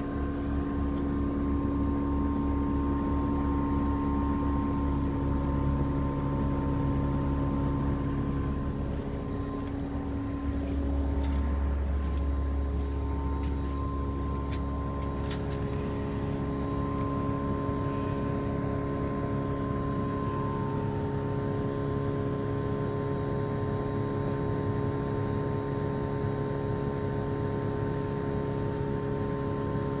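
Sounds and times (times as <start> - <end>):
air conditioner compressor whining: 0.0 - 30.0.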